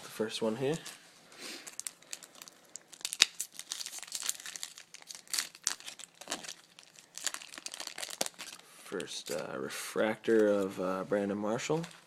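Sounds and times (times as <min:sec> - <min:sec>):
foil wrapper crinkling and tearing: 0:01.6 - 0:09.4.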